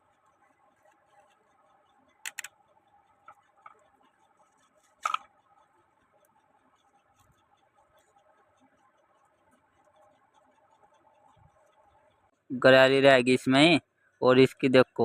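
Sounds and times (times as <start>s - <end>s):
faint steady hum: 0.0s - 15.0s
sharp clicks of small parts: 2.1s - 2.6s, 4.8s - 5.4s.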